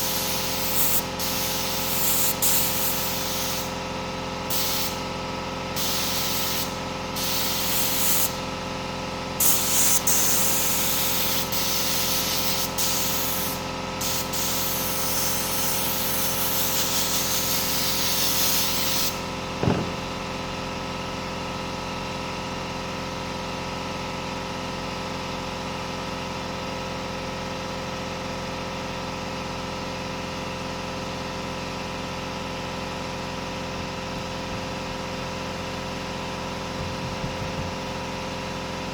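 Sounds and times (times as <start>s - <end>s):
spray gun hissing in bursts: 0.0s - 8.7s, 9.4s - 20.1s
single knock: 19.6s - 20.1s.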